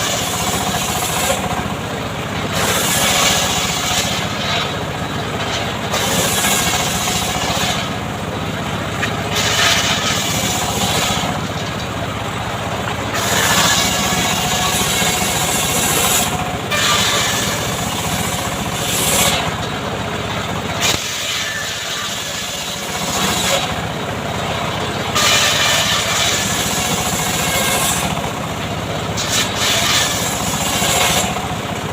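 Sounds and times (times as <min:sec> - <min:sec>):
chainsaw engine revving: 0:02.4 - 0:08.0.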